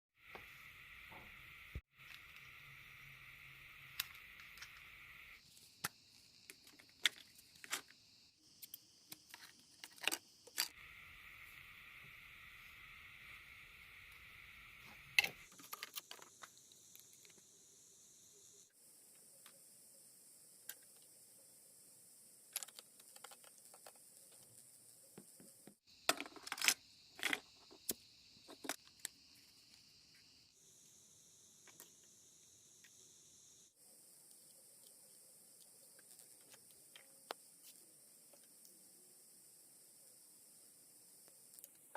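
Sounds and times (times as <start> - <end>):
faint steady hiss: 0.2 - 41.9
small hard parts clicking: 26.0 - 29.2.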